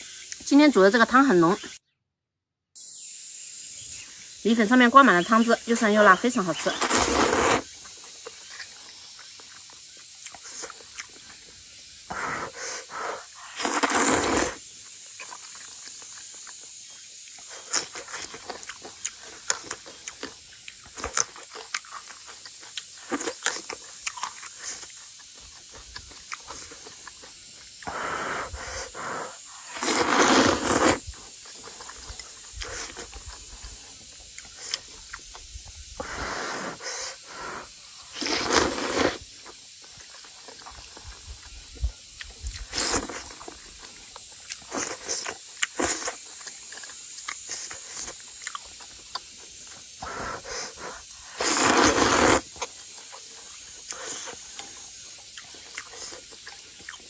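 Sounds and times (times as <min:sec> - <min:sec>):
chewing: 0:05.9 - 0:57.0
person slurping noodles: 0:06.6 - 0:07.7, 0:12.1 - 0:14.6, 0:27.8 - 0:31.3, 0:36.0 - 0:39.2, 0:42.6 - 0:43.4, 0:50.0 - 0:52.6.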